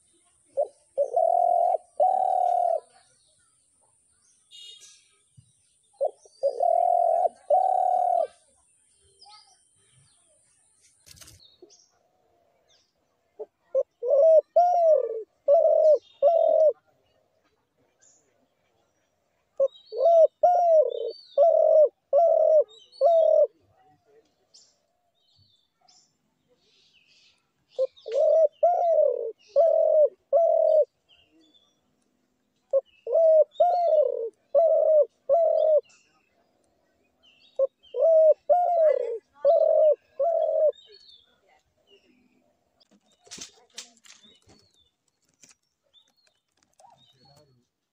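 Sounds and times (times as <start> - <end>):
dove cooing: 0.0 - 3.0, 6.0 - 8.4, 13.4 - 16.8, 19.6 - 23.6, 27.8 - 31.0, 32.7 - 36.0, 37.6 - 41.0
small birds chirping: 0.0 - 47.9.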